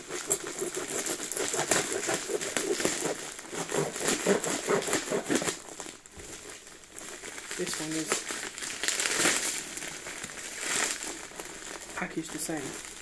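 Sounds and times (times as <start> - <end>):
packaging crinkling and rustling: 0.0 - 13.0.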